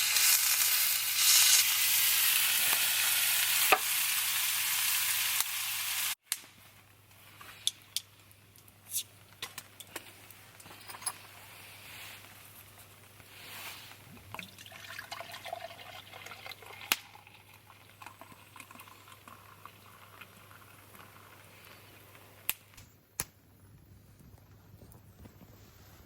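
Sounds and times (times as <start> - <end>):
liquid pouring into a container: 14.3 - 21.4.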